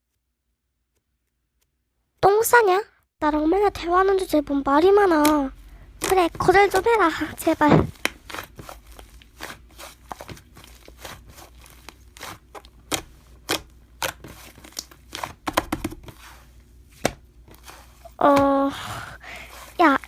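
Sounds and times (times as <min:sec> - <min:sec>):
slime clicking and crackling: 0:05.0 - 0:16.1.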